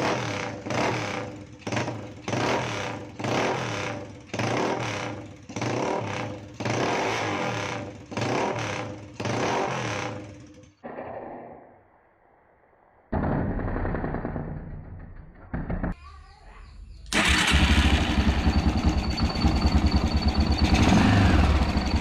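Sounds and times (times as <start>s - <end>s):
motorcycle engine revving: 0.0s - 10.8s, 17.1s - 22.0s.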